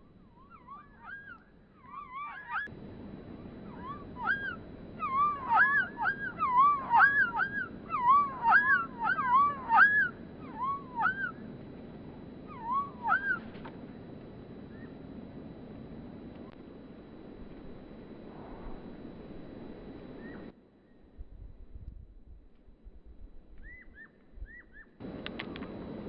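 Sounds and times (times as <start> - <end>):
nuthatch nasal calls: 0.1 - 2.7, 3.6 - 11.4, 12.5 - 13.6.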